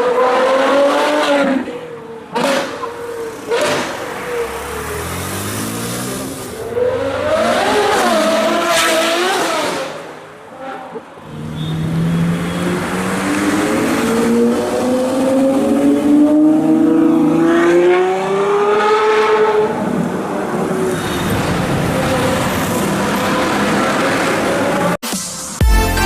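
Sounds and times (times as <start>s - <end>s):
car engine revving hard: 2.4s - 10.0s.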